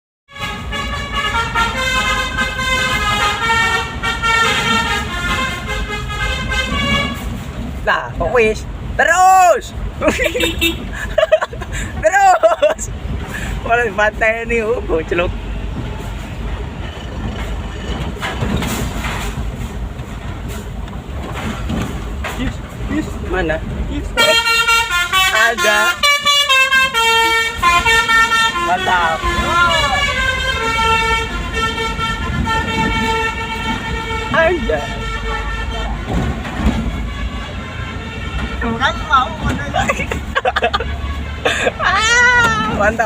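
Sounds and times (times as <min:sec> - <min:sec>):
musical bus horn tune: 0:00.3 - 0:07.5, 0:10.2 - 0:11.0, 0:15.3 - 0:19.7, 0:24.1 - 0:41.8
bus engine rumble: 0:00.3 - 0:43.0
traffic noise: 0:00.3 - 0:43.0.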